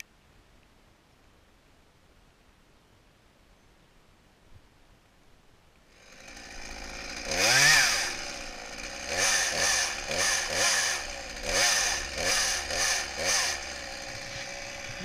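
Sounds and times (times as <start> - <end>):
chainsaw revving: 5.9 - 15.0.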